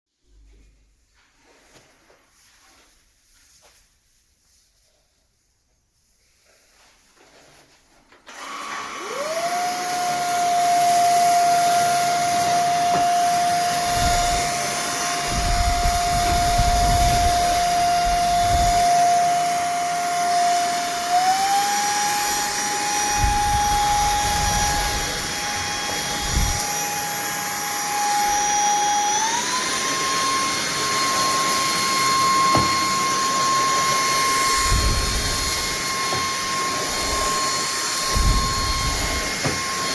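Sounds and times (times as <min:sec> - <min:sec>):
vacuum cleaner motor whine: 0:08.2 - 0:39.9.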